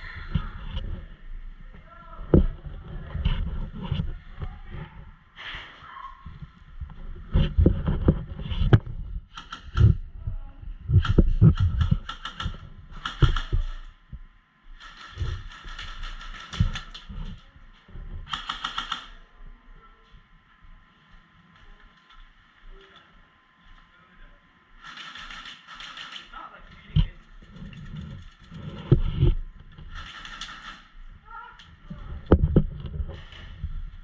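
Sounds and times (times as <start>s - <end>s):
airsoft guns firing bursts: 9.3s - 10.0s, 10.9s - 14.0s, 14.8s - 17.3s, 18.3s - 19.2s, 24.8s - 26.4s, 29.9s - 31.0s.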